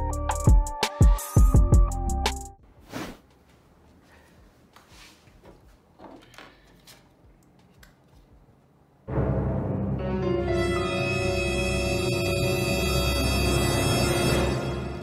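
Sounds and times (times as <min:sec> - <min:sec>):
loud music with sustained tones: 0:09.1 - 0:15.0.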